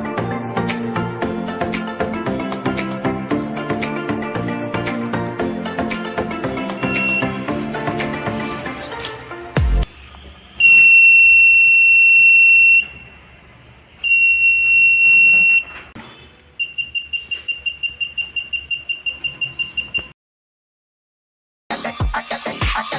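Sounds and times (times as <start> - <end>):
alarm buzzer beeping: 6.6 - 7.6, 10.6 - 13.1, 14.0 - 20.2.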